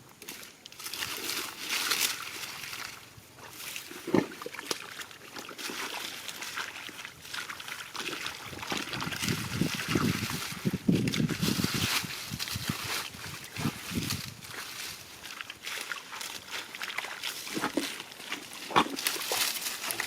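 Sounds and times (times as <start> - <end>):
water sloshing and splashing: 0.2 - 20.0
water trickling: 0.7 - 20.0.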